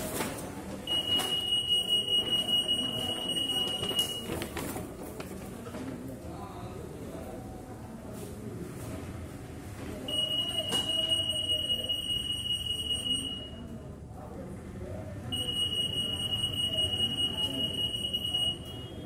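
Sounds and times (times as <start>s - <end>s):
security gate alarm tone: 0.9s - 4.3s, 10.1s - 13.6s, 15.3s - 19.0s.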